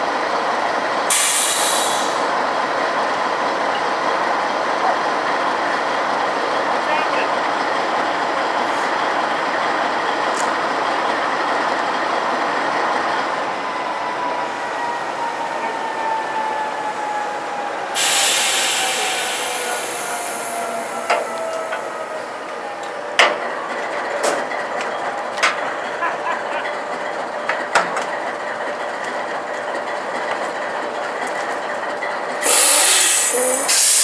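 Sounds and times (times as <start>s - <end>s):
train wheels rumbling on rails: 0.0s - 34.0s
burst of hiss: 1.1s - 2.3s, 18.0s - 20.6s, 32.4s - 34.0s.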